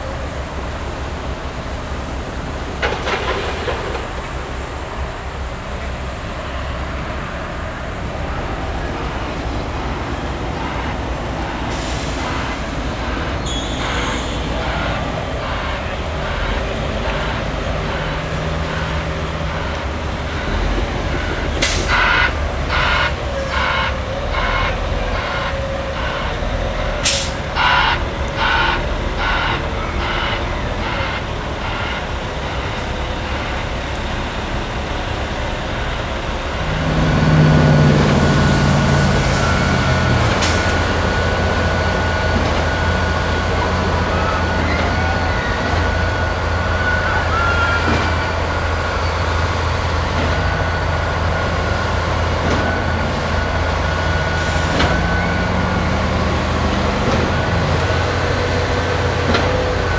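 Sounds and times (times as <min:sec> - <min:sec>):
heavy machinery drone: 0:00.0 - 0:59.9.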